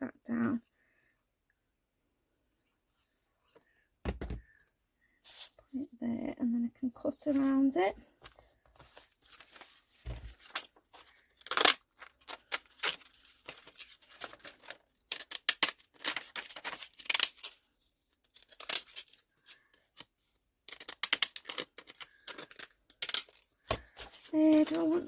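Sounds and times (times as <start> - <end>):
scissors snipping paper: 20.7 - 25.0.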